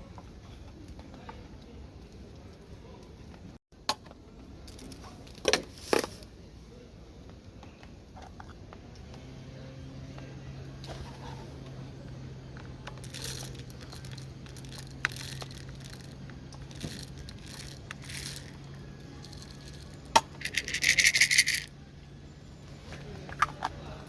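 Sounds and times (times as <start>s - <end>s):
small hard objects scraping: 4.8s - 6.3s, 12.8s - 21.7s.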